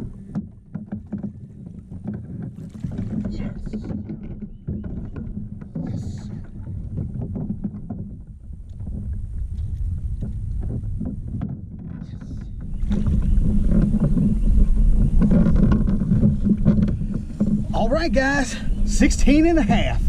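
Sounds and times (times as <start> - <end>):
gear knocking on kayak: 0.0 - 19.8
wind on microphone: 0.0 - 20.0
low rumble: 5.4 - 20.0.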